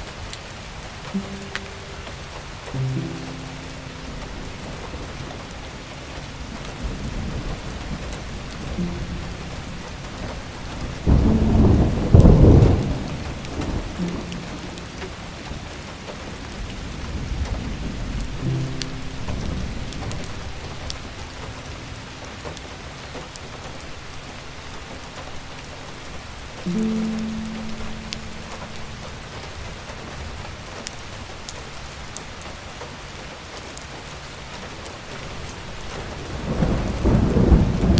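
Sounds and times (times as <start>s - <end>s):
soft background music: 0.0s - 32.2s
steady rain falling: 0.0s - 37.9s
thunder rumble: 3.0s - 25.6s, 35.7s - 37.9s.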